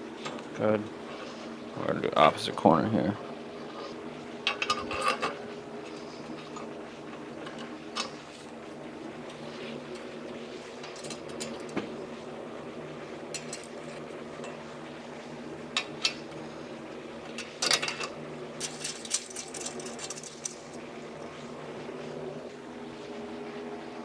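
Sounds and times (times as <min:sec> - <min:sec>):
metal parts clinking and knocking: 0:17.4 - 0:20.8
light metal rattling: 0:17.4 - 0:20.9.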